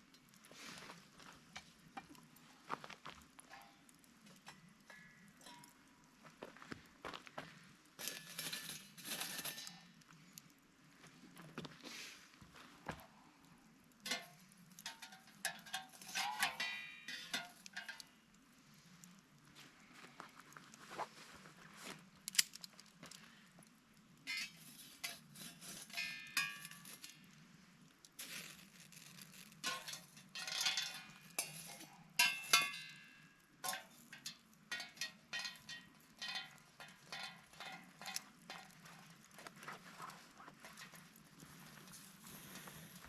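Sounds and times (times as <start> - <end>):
small metallic clinks: 29.5 - 38.9.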